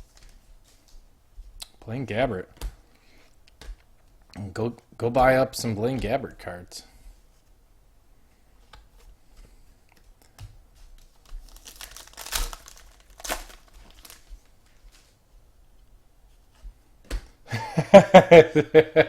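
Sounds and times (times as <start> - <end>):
cards being handled: 10.0 - 15.1
wrapper crinkling and tearing: 11.0 - 15.0.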